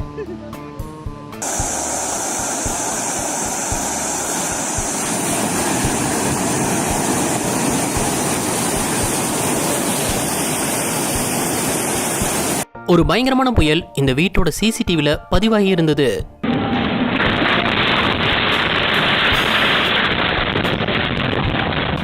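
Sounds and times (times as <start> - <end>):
rushing floodwater roar: 1.4 - 12.6.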